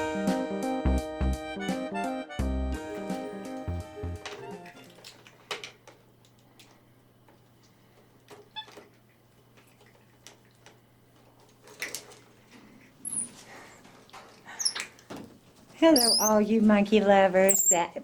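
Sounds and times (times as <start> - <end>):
monkey squeak: 13.0 - 13.3, 14.6 - 14.9, 16.0 - 16.4, 17.5 - 17.9.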